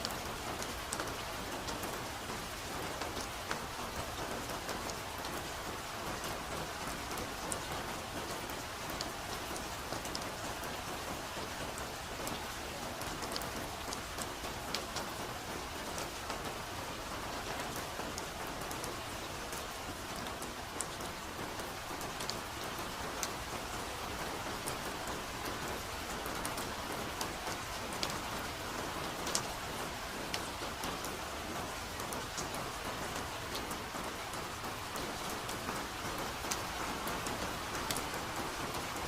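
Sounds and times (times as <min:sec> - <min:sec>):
soft rain falling: 0:00.0 - 0:39.0.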